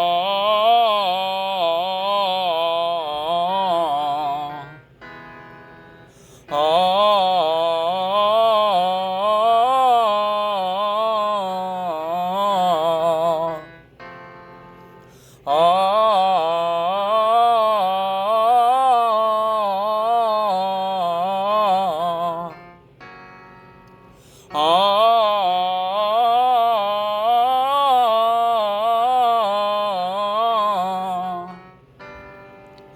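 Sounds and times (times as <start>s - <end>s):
person singing vocal exercise: 0.0s - 5.0s, 6.1s - 13.9s, 15.1s - 22.7s, 24.2s - 31.8s.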